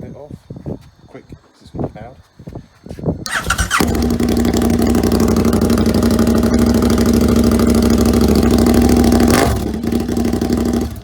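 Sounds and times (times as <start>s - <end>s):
motorcycle engine idling loudly: 3.3s - 11.0s.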